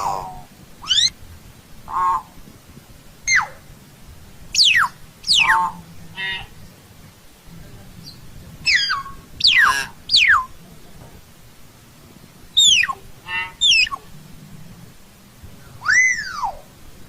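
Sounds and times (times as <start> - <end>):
myna bird calling: 0.0 - 1.2, 1.8 - 2.6, 3.2 - 3.7, 4.5 - 6.6, 8.0 - 10.6, 12.5 - 14.2, 15.7 - 16.8.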